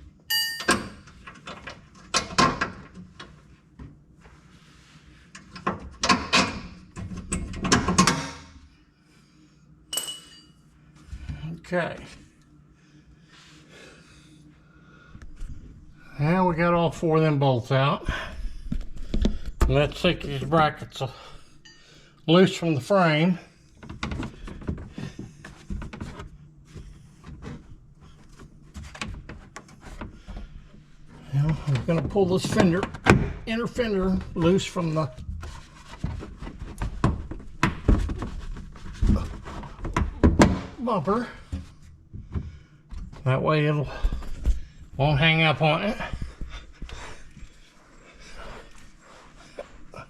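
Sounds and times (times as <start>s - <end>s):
short metallic ring: 0.3s - 0.8s, 9.9s - 10.6s.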